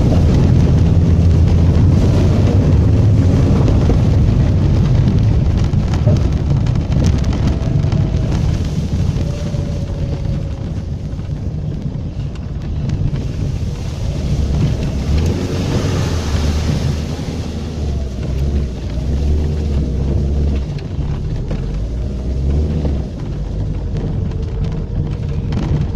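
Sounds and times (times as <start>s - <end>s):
car engine and tyres in mud: 0.0s - 25.9s
mud spattering hiss: 13.2s - 18.6s.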